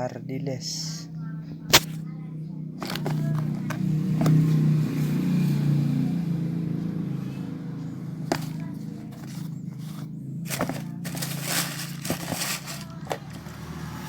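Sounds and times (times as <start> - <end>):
rustling: 2.8 - 4.4, 8.3 - 13.6.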